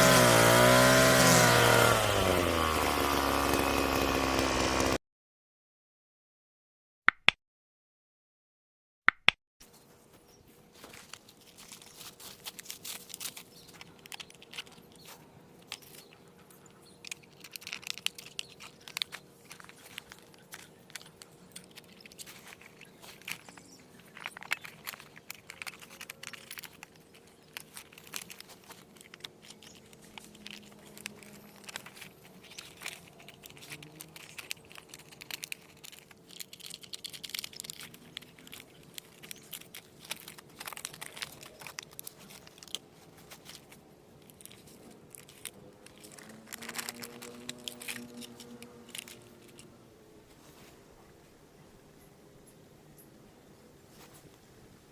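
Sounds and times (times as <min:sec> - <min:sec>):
crinkling handling noise: 0:09.6 - 0:52.1, 0:53.8 - 0:54.7.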